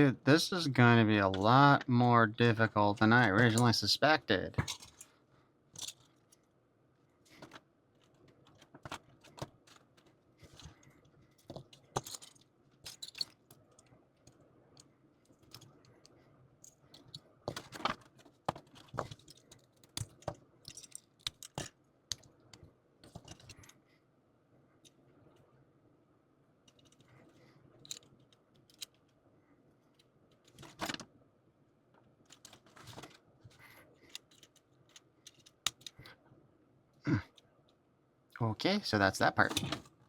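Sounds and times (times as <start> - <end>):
plastic model parts clicking: 19.1 - 23.8, 27.8 - 29.2, 34.0 - 36.1.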